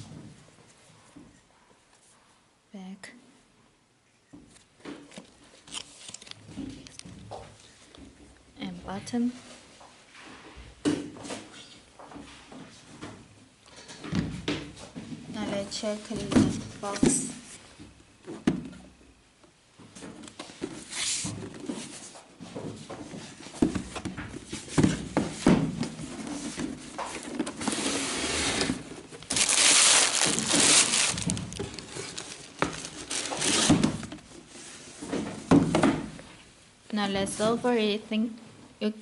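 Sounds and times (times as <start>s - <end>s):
cardboard rustling: 23.1s - 35.6s.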